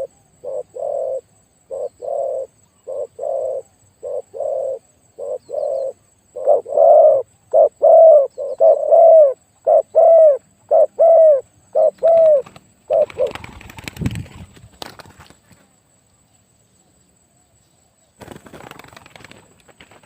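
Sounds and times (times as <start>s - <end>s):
dove cooing: 0.0s - 14.0s.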